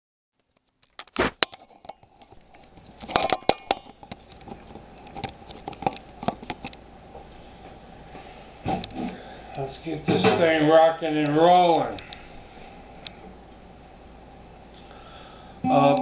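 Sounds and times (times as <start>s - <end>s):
handling knocks and clicks: 0.4s - 6.8s.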